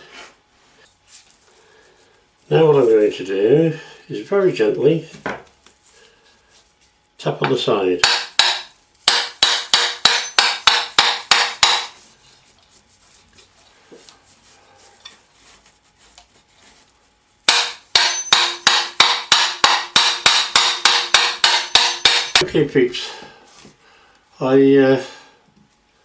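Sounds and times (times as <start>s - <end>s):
hammer tapping on metal motor: 7.4s - 12.0s, 17.5s - 22.5s.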